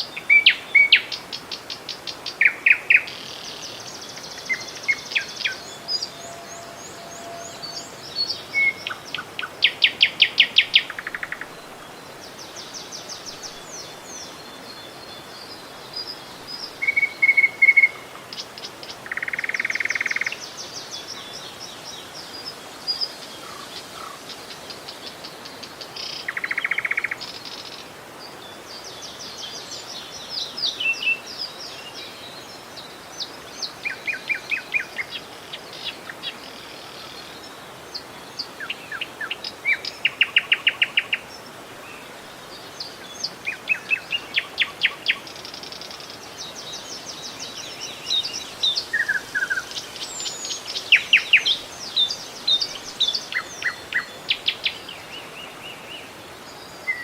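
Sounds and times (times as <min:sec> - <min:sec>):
birds chirping: 0:00.0 - 0:21.5, 0:31.9 - 0:57.0
flowing river water: 0:00.0 - 0:57.0.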